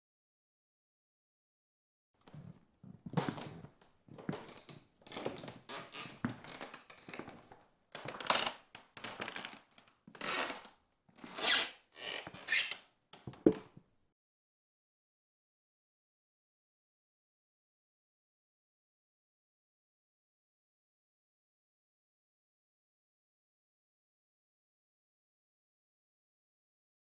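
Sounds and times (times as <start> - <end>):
creaks and scrapes: 2.2 - 13.6.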